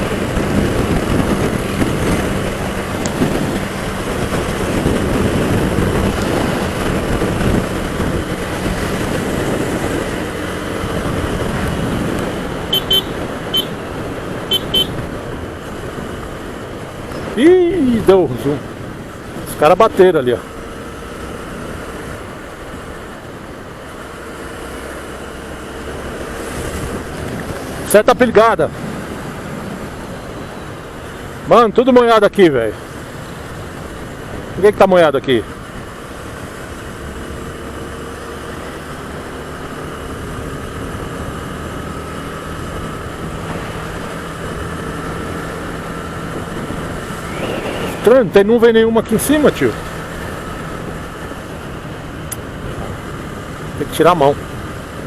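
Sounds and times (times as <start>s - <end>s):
motorcycle engine running: 0.0s - 17.4s
motorcycle engine cruising: 0.0s - 55.0s
riding wind noise: 0.0s - 55.0s.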